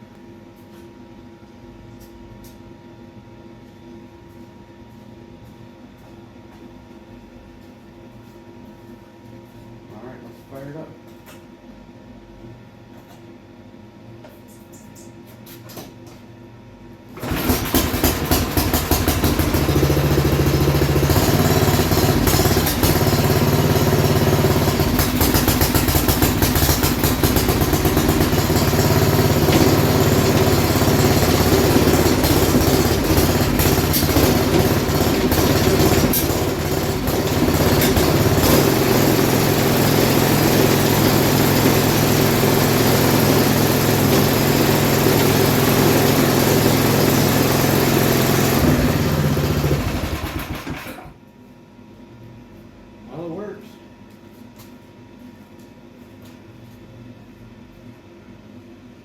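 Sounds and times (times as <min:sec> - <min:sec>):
snowblower engine running: 0:17.2 - 0:51.2.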